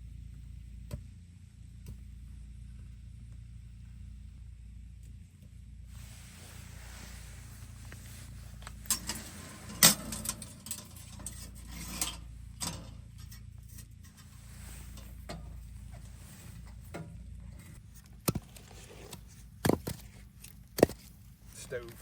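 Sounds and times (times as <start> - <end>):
metal stove clinks and knocks: 8.8 - 14.3.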